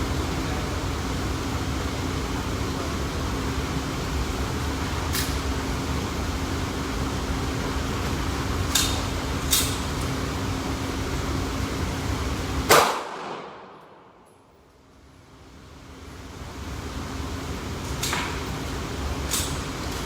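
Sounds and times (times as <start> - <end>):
ventilation hum: 0.0 - 20.0
gunshots: 12.7 - 13.8.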